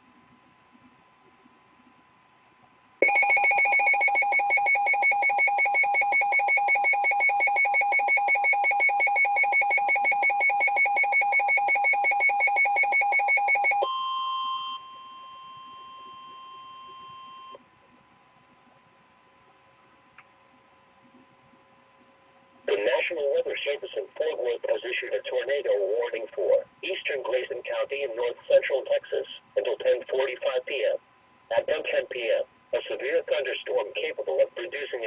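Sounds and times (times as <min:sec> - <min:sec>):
fast-pulsing alarm tone: 0:03.0 - 0:13.9.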